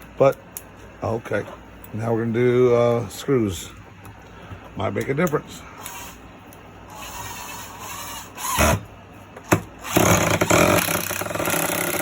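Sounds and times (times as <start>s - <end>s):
impact driver hammering a screw: 9.5s - 12.0s.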